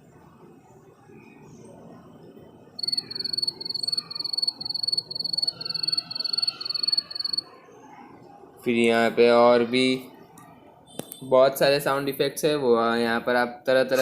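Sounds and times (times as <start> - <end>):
fainter lower cricket calls: 2.7 - 7.5
crickets chirping: 2.8 - 7.5.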